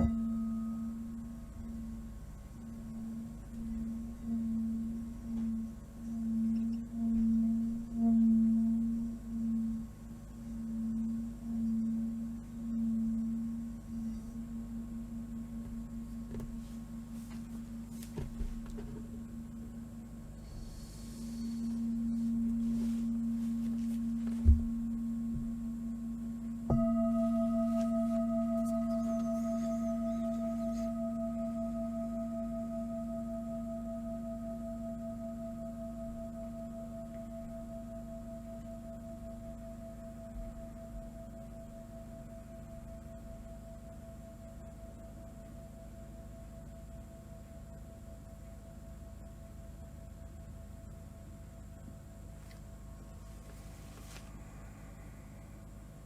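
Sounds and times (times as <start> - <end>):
singing bowl ringing: 0.0 - 56.0
short dull thump: 24.3 - 25.5.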